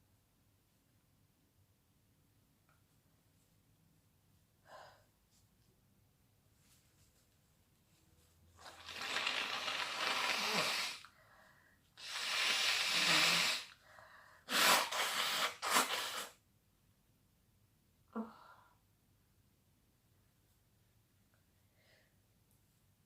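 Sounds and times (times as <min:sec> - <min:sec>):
person breathing hissing: 0:08.6 - 0:16.4
person sneezing: 0:14.5 - 0:16.4.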